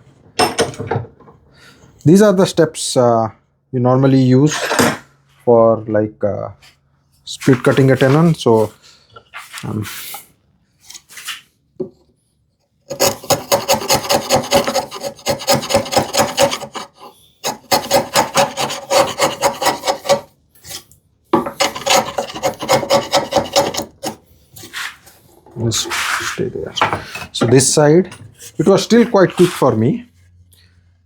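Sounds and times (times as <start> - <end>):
hand saw cutting wood: 12.9 - 20.8, 21.4 - 25.0, 28.6 - 29.8.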